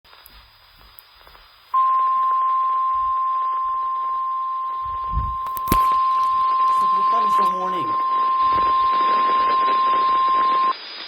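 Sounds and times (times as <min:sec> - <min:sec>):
weather radio alarm tone: 0:01.8 - 0:10.7
low thump: 0:04.8 - 0:05.5
sharp click: 0:05.4 - 0:06.4.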